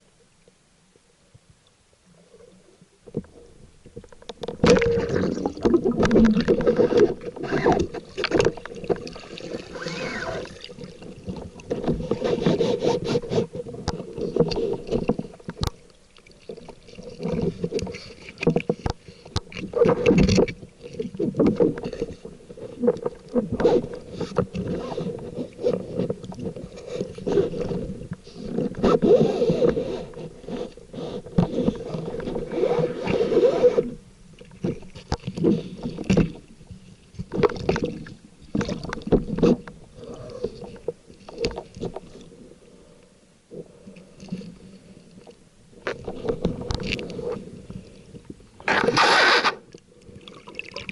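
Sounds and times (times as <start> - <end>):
muffled underwater water movement: 0.0 - 50.9
underwater knocks and clicks: 3.0 - 33.2, 34.4 - 39.8, 45.2 - 48.9.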